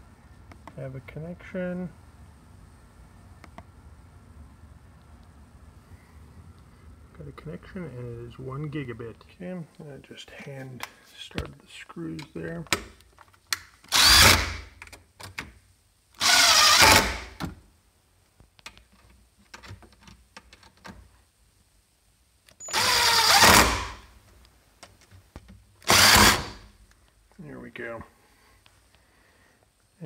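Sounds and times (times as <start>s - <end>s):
power drill driving screws: 13.9s - 14.6s, 16.2s - 17.3s, 22.6s - 24.0s, 25.8s - 26.6s
small clicks and taps: 18.3s - 21.0s.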